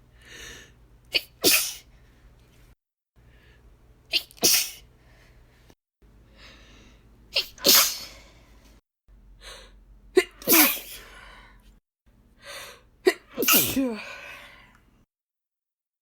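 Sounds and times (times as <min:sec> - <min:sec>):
woman sneezing: 0:01.1 - 0:01.9, 0:04.1 - 0:04.8, 0:07.4 - 0:08.2, 0:10.2 - 0:11.1, 0:13.1 - 0:14.4
soft breaths: 0:01.9 - 0:03.8, 0:04.9 - 0:07.2.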